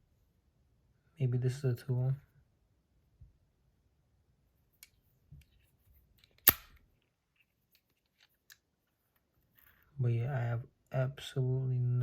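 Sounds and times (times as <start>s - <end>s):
sharp snap of fidget spinner: 6.4s - 6.8s.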